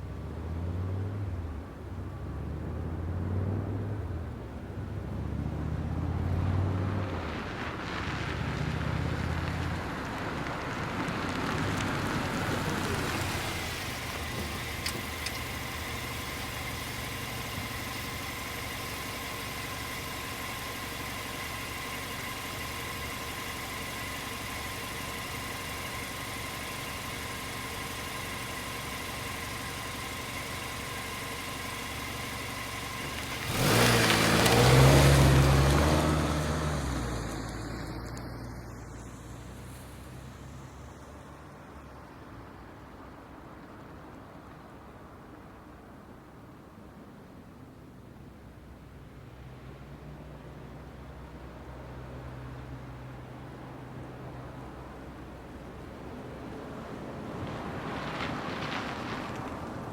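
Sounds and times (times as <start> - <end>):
car driving past: 31.9 - 41.6.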